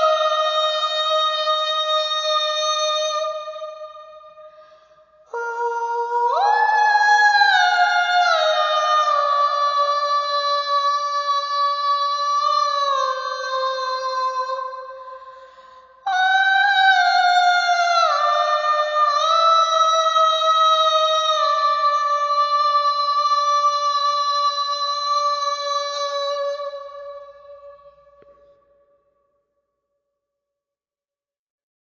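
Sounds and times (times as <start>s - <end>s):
woman singing unaccompanied: 0.0s - 3.8s, 5.3s - 15.1s, 16.1s - 26.9s.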